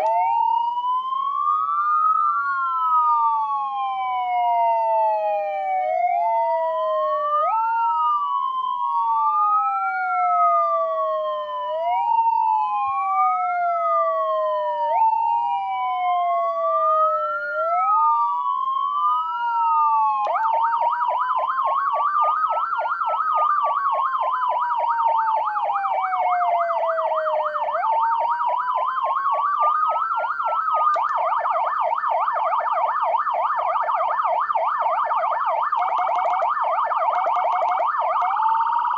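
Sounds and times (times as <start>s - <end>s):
electronic siren wailing and warbling: 19.2s - 38.9s.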